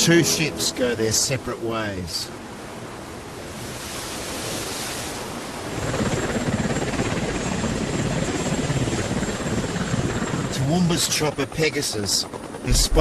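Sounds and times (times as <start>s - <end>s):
sea wash: 0.0s - 7.2s
wind: 0.0s - 13.0s
helicopter rotor and engine whine: 5.5s - 13.0s.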